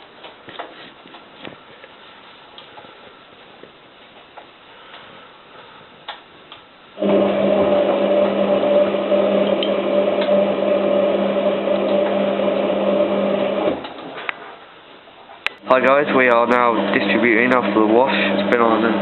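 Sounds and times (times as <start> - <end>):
washing machine electric hum: 5.7 - 14.9, 15.6 - 19.0.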